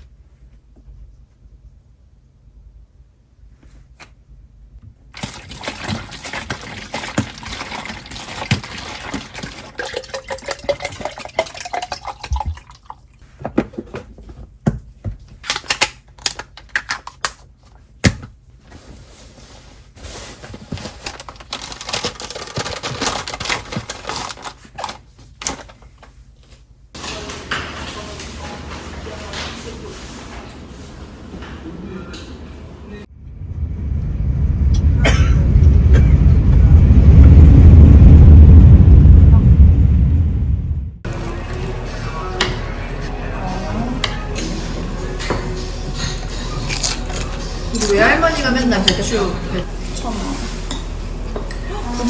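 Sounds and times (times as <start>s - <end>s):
water running into a container: 5.1s - 13.2s.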